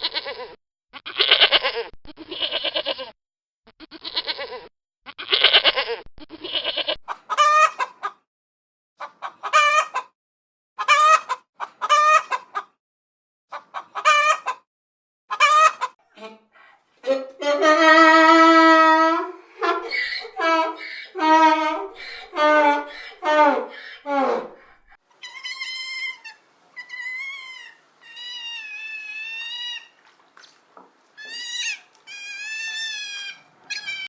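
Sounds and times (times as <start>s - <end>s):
goat bleating: 0.0s - 3.1s, 3.8s - 7.0s, 17.0s - 24.5s, 25.2s - 30.0s, 31.2s - 34.0s
peacock calling loudly: 19.6s - 30.0s, 31.2s - 34.0s.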